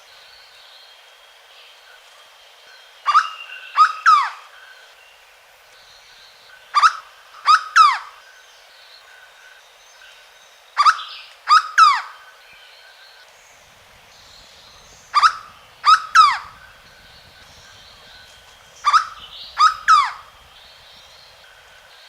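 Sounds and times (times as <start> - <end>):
faint steady high tones: 12.9 - 22.0
bird singing downward-slurred notes: 13.4 - 21.9.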